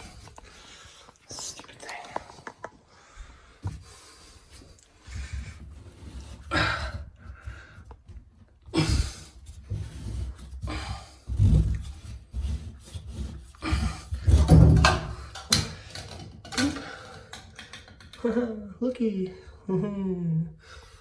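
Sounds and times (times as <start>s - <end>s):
scraping and rubbing: 4.0s - 16.6s.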